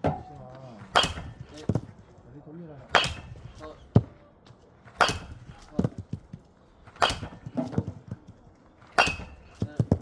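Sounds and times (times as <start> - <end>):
baseball bat cracking ball: 0.8 - 1.9, 3.0 - 3.8, 5.0 - 6.0, 7.0 - 8.2, 9.0 - 9.7.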